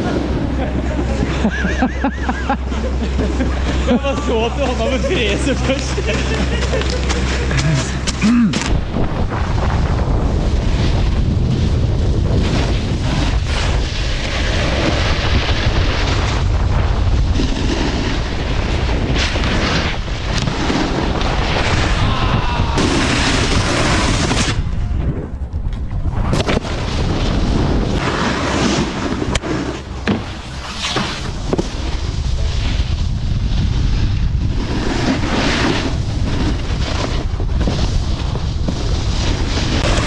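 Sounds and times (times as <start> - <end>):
snowboard scraping across snow: 0.0 - 22.0, 22.6 - 25.3, 26.1 - 40.0
wind rumble on microphone: 0.0 - 40.0.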